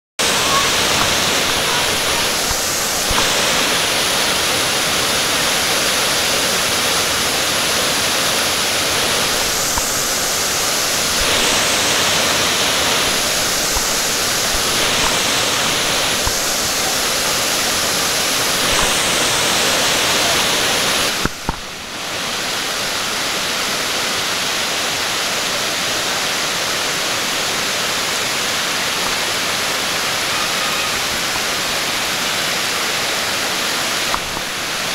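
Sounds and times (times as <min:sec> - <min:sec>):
waterfall rushing: 0:00.2 - 0:34.9.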